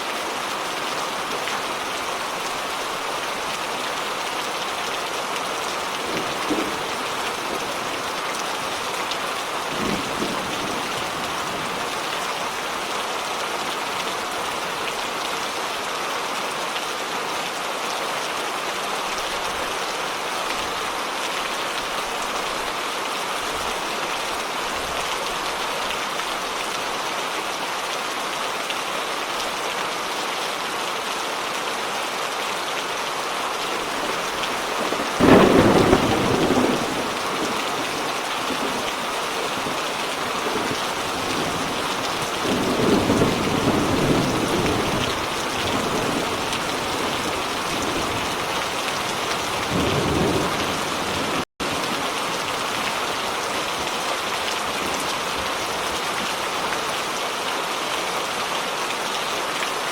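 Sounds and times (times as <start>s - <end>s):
rain hiss: 0.0s - 16.0s, 33.6s - 59.5s
thunderclap rumbling: 5.8s - 12.2s, 33.8s - 51.4s.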